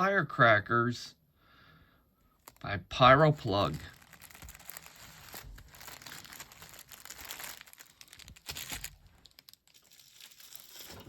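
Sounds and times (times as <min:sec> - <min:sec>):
paper wrapping crinkling: 0:02.4 - 0:11.0.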